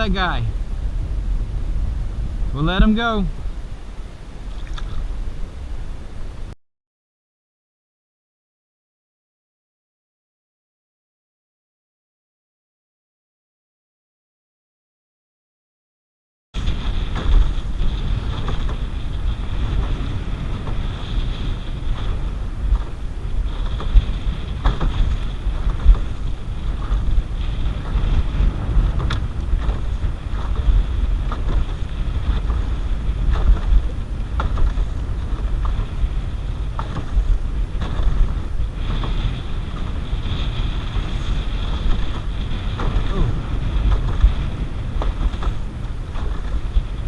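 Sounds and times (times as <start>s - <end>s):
wind buffeting microphone: 0.0s - 6.5s, 16.6s - 47.0s
water slapping against canoe: 16.6s - 47.0s.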